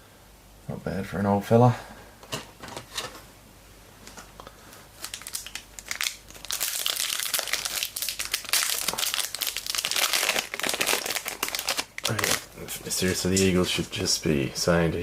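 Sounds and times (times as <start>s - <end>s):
plastic foil wrapper crinkling: 4.9s - 13.8s.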